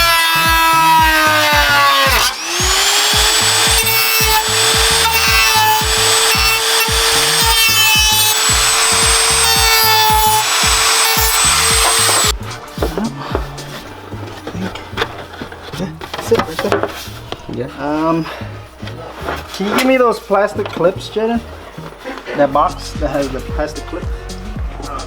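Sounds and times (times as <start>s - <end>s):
music with driving beat: 0.0s - 17.4s, 22.6s - 25.0s
handling sounds: 12.2s - 25.0s.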